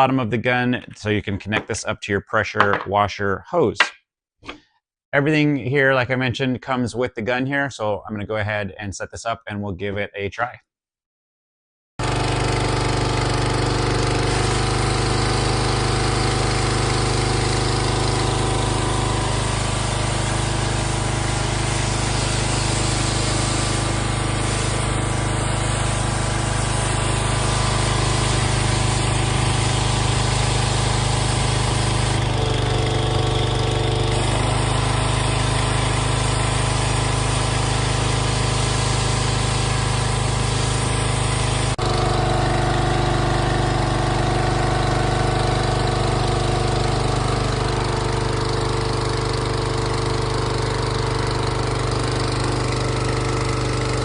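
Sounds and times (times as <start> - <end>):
pressure washer engine running: 12.0 - 54.0
water spraying hiss: 16.5 - 32.3, 34.2 - 41.8.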